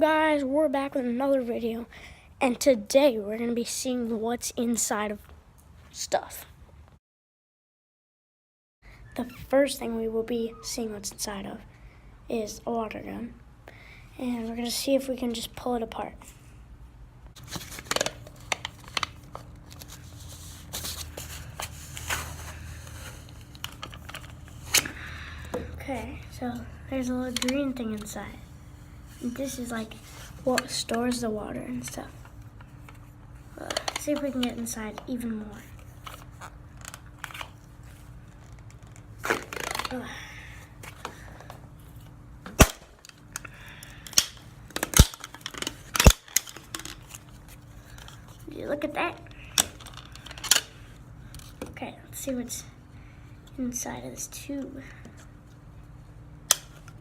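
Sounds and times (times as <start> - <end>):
plastic handling and rustling: 17.3 - 28.3, 29.2 - 40.1, 40.8 - 51.8
plastic parts scraping: 17.4 - 25.0, 36.0 - 40.0, 40.8 - 48.5, 49.4 - 51.7.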